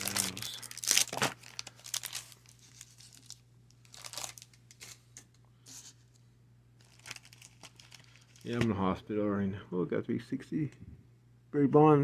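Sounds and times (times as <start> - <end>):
card wrappers crinkling: 0.0 - 5.8, 6.8 - 8.7.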